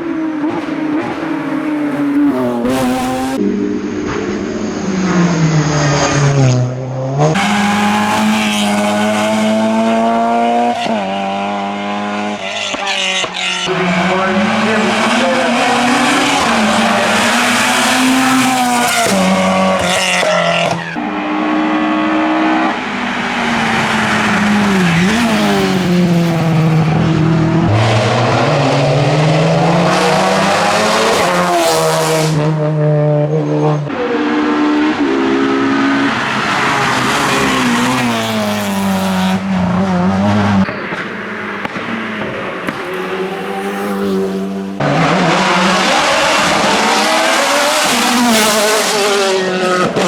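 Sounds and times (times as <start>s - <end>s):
race car engine changing gear: 12.5s - 32.6s.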